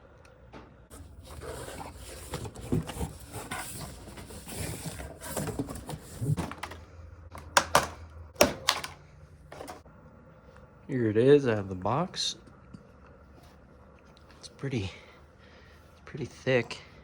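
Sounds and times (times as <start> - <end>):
cardboard box rustling and scraping: 0.9 - 6.8.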